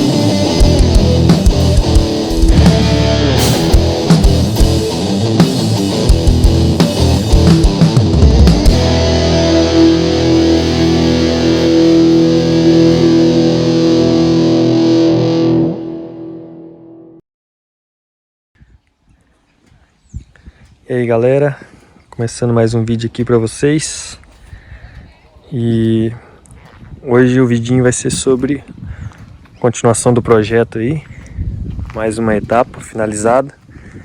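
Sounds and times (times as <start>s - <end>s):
drums: 0.0s - 14.6s
distorted electric guitar rock: 0.0s - 17.2s.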